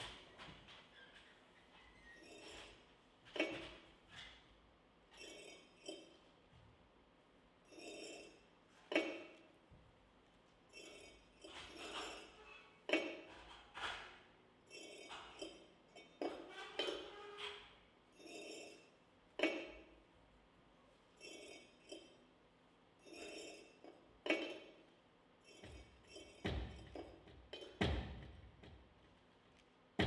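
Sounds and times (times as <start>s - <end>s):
glassy clinking and chiming: 5.2s - 6.3s, 7.6s - 9.4s, 10.7s - 12.4s, 14.7s - 17.1s, 18.1s - 19.0s, 21.2s - 22.3s, 23.0s - 27.8s
sharp knocks: 26.4s - 28.9s.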